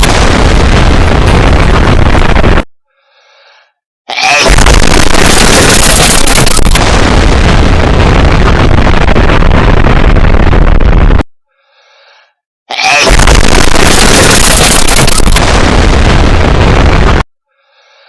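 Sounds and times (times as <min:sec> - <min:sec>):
loud explosion: 0:00.0 - 0:02.7, 0:04.4 - 0:11.2, 0:13.0 - 0:17.3.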